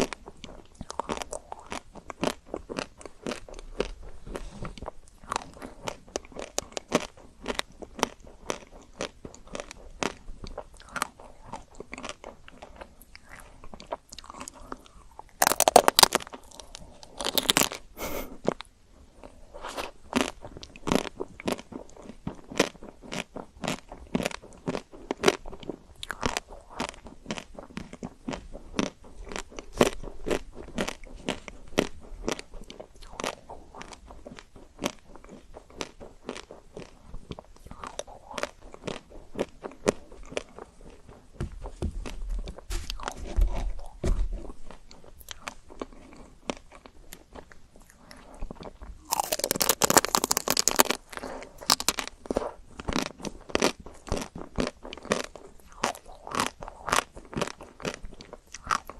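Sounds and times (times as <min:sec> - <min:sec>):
crunching ice cream chocolate shell: 0:05.2 - 0:18.6, 0:45.0 - 0:58.9.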